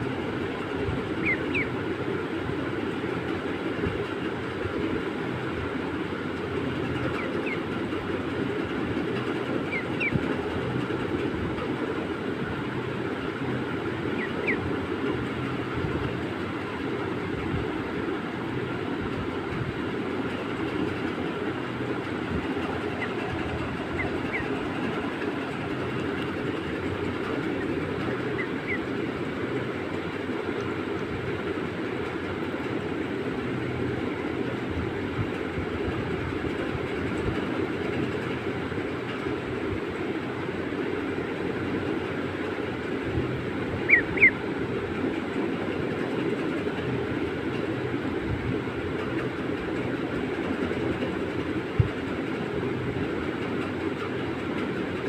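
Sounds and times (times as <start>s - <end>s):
steady low rumble: 0.0s - 55.0s
duckling peeping: 0.6s - 1.8s, 6.8s - 7.8s, 9.2s - 10.4s, 13.9s - 15.7s, 22.4s - 26.3s, 27.1s - 29.0s, 43.7s - 44.4s.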